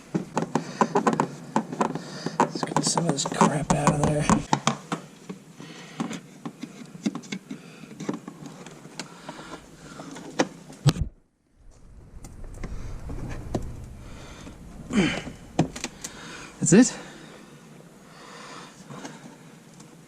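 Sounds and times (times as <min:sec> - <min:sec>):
low hum: 0:11.1 - 0:18.0.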